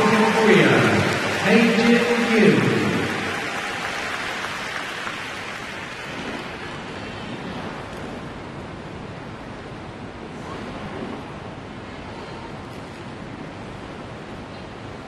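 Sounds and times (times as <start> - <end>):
crowd applauding: 0.0 - 7.2.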